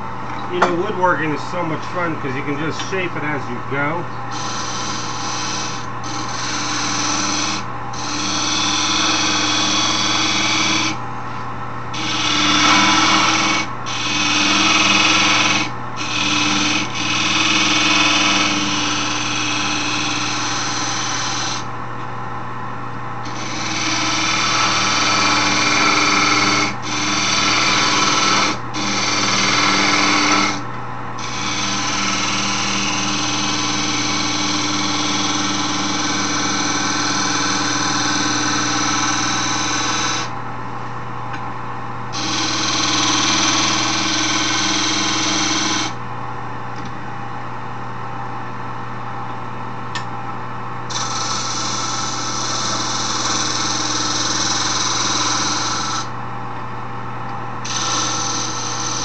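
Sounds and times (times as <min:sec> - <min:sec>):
wood lathe motor running: 0:00.0 - 0:11.0, 0:11.9 - 0:21.7, 0:23.2 - 0:40.3, 0:42.1 - 0:46.0, 0:50.9 - 0:56.1, 0:57.6 - 0:59.0
turning tool scraping wood: 0:04.3 - 0:11.0, 0:12.0 - 0:21.6, 0:23.3 - 0:30.6, 0:31.2 - 0:40.3, 0:42.2 - 0:46.0.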